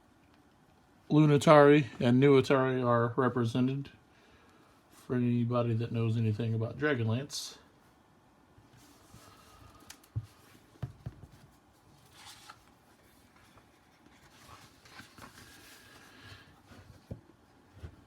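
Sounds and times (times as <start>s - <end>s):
dull knocks on book: 10.2s - 11.4s
book pages turning: 11.3s - 17.2s.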